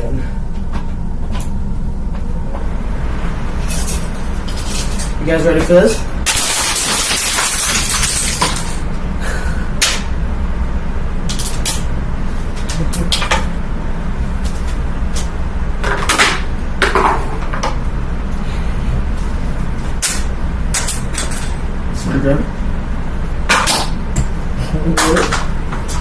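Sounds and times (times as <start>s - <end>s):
box fan humming: 0.0s - 26.0s
plastic pieces clattering against fan blades: 3.6s - 8.9s, 12.6s - 13.5s, 20.0s - 21.6s, 23.5s - 26.0s.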